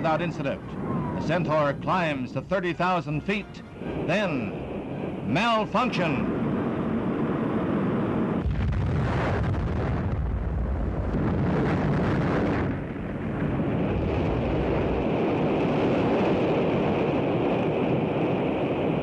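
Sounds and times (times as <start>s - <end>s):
rocket explosion rumbling: 6.1s - 19.0s.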